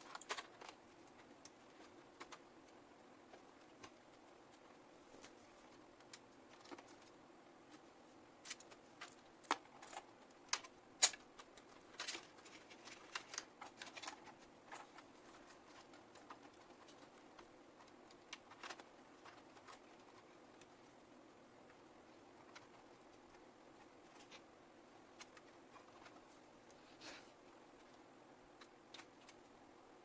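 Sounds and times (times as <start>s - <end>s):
hands handling computer parts: 0.0s - 30.0s.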